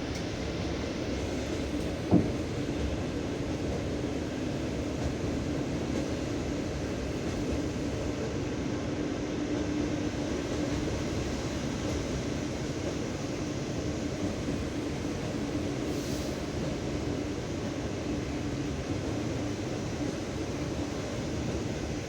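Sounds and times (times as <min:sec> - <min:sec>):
train rumble inside carriage: 0:00.0 - 0:22.0.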